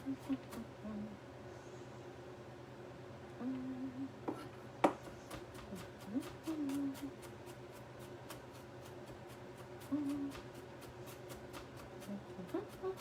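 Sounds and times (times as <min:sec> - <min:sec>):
person humming: 0:00.0 - 0:01.2, 0:03.4 - 0:04.2, 0:05.7 - 0:07.2, 0:09.8 - 0:10.5, 0:12.0 - 0:13.0.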